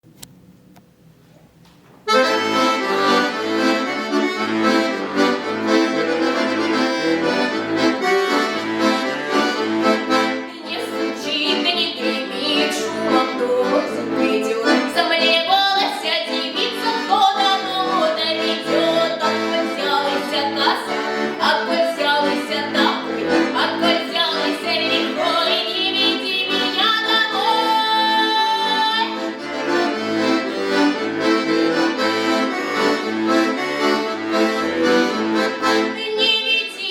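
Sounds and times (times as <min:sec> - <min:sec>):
accordion playing folk song: 0:02.0 - 0:36.9.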